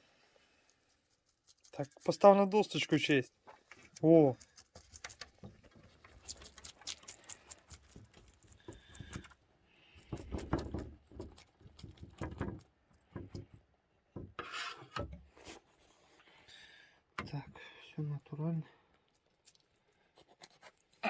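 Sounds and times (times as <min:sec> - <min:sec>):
knife scraping fish scales: 0:04.4 - 0:10.2, 0:14.4 - 0:15.6, 0:20.0 - 0:21.0.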